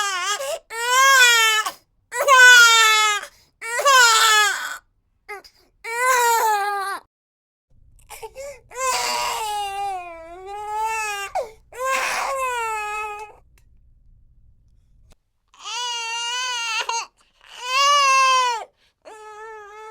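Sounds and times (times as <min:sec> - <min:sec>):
infant crying: 0:00.0 - 0:07.1, 0:08.1 - 0:13.4, 0:15.6 - 0:19.9
infant gasping for breath: 0:08.1 - 0:08.7.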